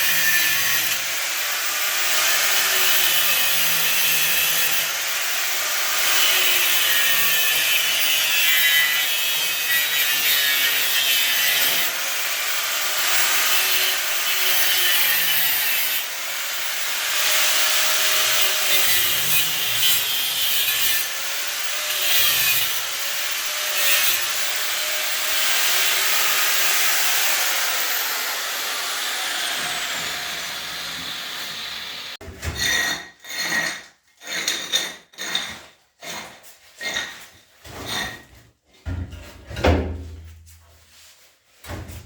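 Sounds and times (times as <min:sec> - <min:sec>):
hand sawing strokes: 0:00.0 - 0:32.2
power tool grinding: 0:00.0 - 0:37.3.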